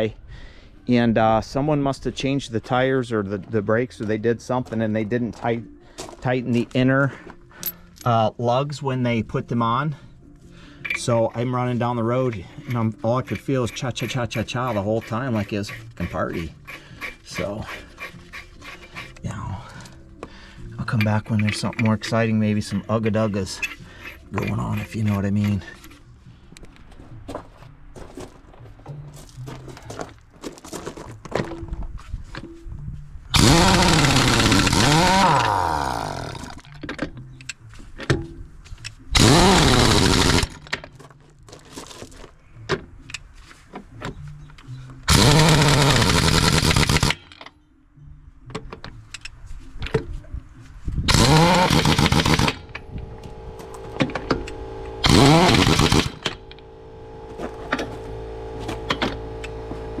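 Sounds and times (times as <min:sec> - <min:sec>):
impact wrench on lug nuts: 0:12.3 - 0:19.9, 0:20.9 - 0:25.9, 0:33.3 - 0:37.0, 0:39.2 - 0:40.8, 0:45.1 - 0:47.5, 0:51.1 - 1:00.0
steady hum: 0:51.1 - 1:00.0.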